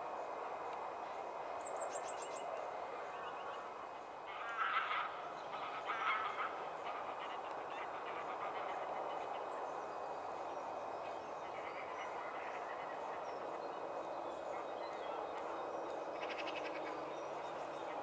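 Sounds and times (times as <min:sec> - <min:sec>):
waterfowl calls: 0:04.3 - 0:09.5.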